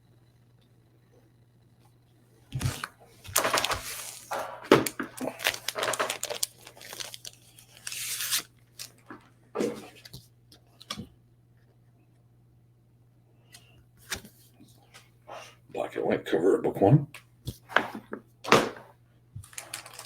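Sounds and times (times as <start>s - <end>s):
plastic bags and paper crinkling: 2.5s - 10.2s, 19.4s - 20.0s.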